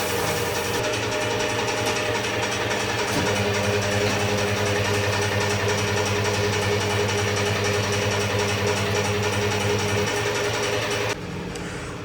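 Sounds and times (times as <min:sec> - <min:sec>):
electric motor humming: 0:01.6 - 0:11.2.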